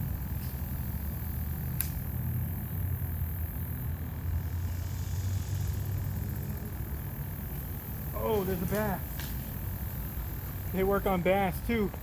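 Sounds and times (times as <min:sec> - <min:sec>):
low outdoor rumble: 0:00.0 - 0:12.0.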